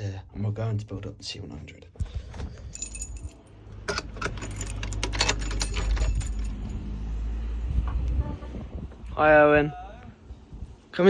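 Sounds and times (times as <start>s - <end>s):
keys jangling: 2.7s - 6.8s.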